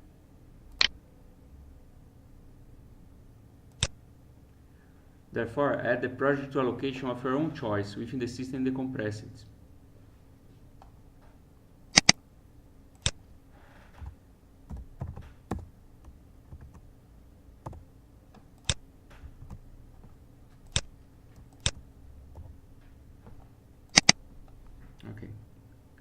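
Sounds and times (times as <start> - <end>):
faint low hum: 0.0 - 26.0
computer mouse clicking: 0.7 - 0.9, 3.7 - 4.0, 12.0 - 12.2, 12.9 - 13.2, 17.6 - 18.8, 20.5 - 22.6, 23.2 - 24.7.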